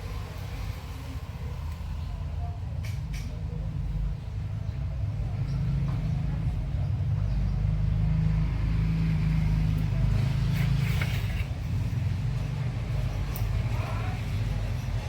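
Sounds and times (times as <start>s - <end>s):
vehicle engine droning: 3.4s - 15.0s.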